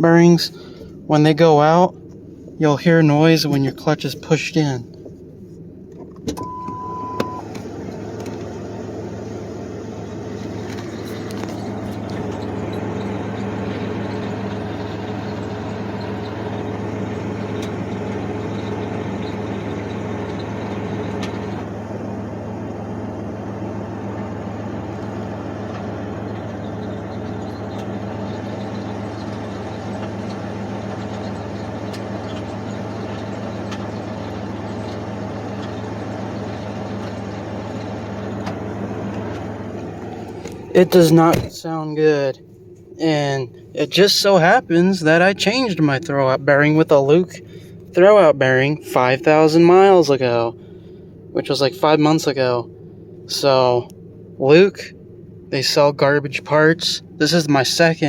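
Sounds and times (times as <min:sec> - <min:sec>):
car engine idling: 0:00.0 - 0:58.0
whirring clutch bearing noise: 0:00.0 - 0:58.0
short beep: 0:06.4 - 0:07.5.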